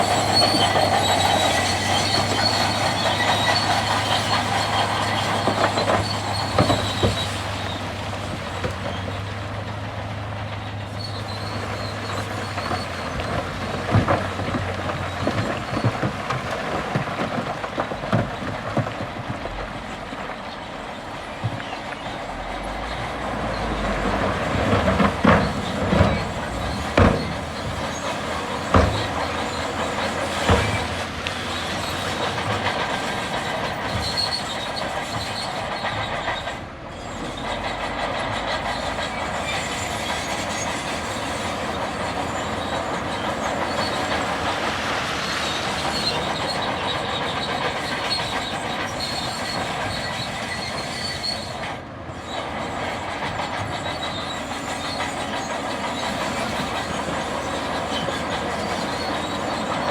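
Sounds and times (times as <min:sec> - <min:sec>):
bulldozer engine noise: 0:00.0 - 0:59.9
bulldozer tracks clanking and squealing: 0:00.0 - 0:59.9.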